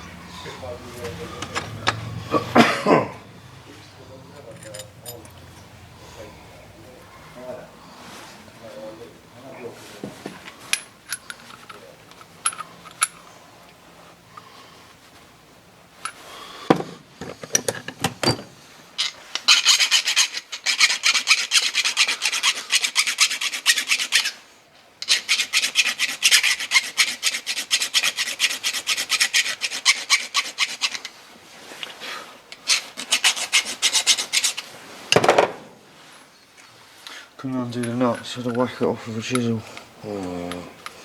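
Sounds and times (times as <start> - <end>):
hand tool filing: 0.5 - 2.5, 19.4 - 24.4, 25.0 - 34.9.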